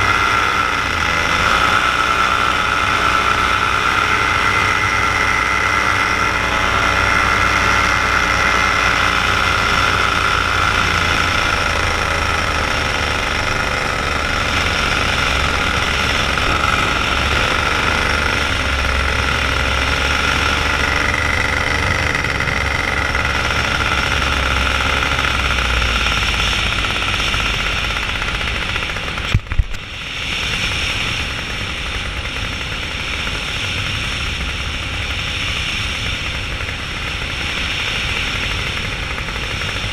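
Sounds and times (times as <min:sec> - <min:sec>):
paramotor engine and propeller: 0:00.0 - 0:39.9
low rumble: 0:02.0 - 0:29.9.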